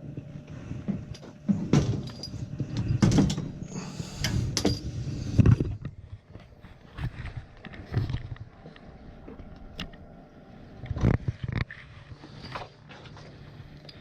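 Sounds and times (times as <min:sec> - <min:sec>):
low steady hum: 0:00.0 - 0:14.0
metal hardware clanking and scraping: 0:00.9 - 0:03.6, 0:04.2 - 0:05.0.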